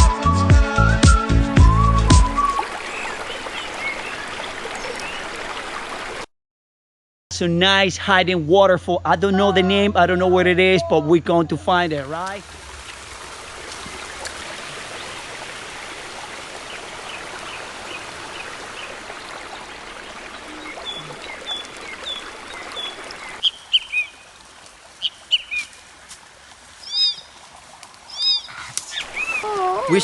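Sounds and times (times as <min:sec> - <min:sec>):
stream water rushing: 0:02.2 - 0:06.3, 0:11.8 - 0:30.0
birds chirping: 0:02.4 - 0:05.4, 0:16.5 - 0:24.2, 0:25.0 - 0:25.8, 0:26.8 - 0:27.4, 0:28.0 - 0:30.0.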